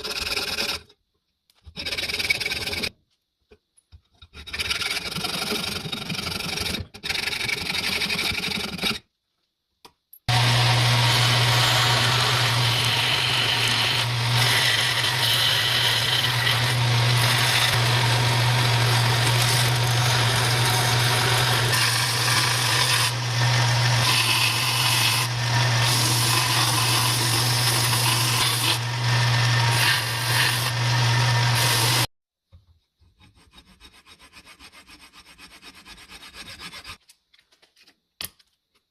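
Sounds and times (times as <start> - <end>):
power sander motor hum: 10.3 - 32.1
gritty rasping of sanding: 33.2 - 37.0.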